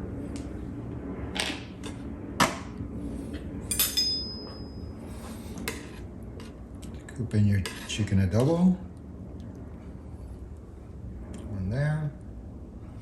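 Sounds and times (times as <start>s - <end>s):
steady low hum: 0.0s - 13.0s
ringing clink: 3.7s - 5.0s.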